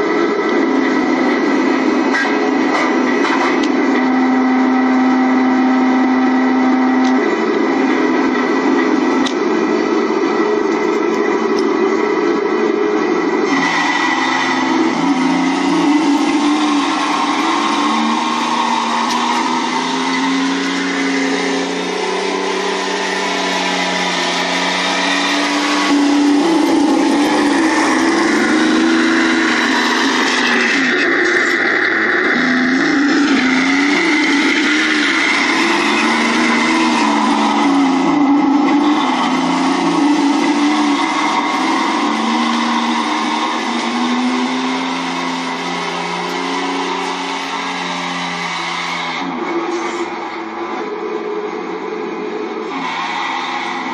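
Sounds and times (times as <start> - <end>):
simulated tank engine from loudspeaker: 0.0 - 53.9.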